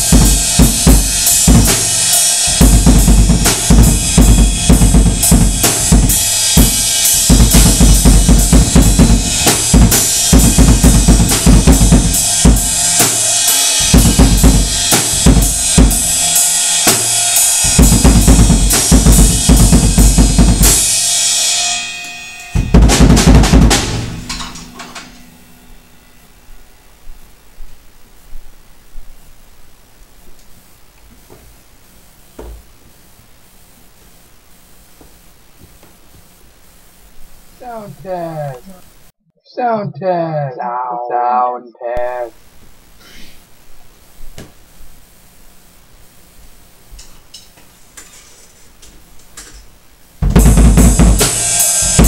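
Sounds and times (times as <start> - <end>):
cymbals ringing: 20.9 - 27.1.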